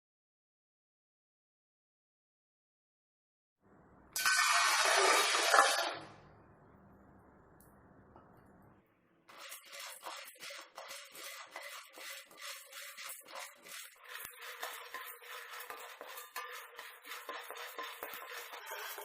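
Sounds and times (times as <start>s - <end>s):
dry rasping and rustling: 9.3s - 19.0s.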